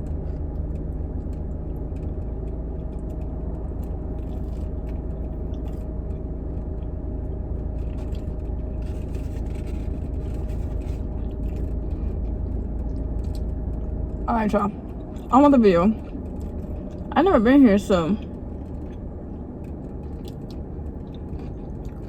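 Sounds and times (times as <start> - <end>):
small clicks and rustles: 0.0 - 14.2
idling car low rumble: 0.0 - 22.0
person chewing: 18.5 - 22.0.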